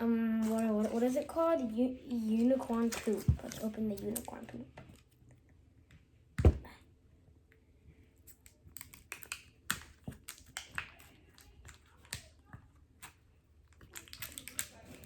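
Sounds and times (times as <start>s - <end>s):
plastic package clicks and crinkles: 8.3s - 15.0s.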